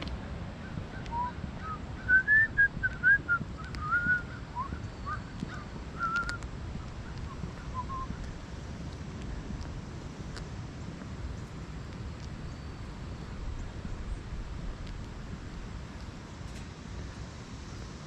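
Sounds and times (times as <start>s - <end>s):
steady low rumble: 0.0s - 18.0s
bird whistling chirps: 1.0s - 6.4s, 7.2s - 8.2s.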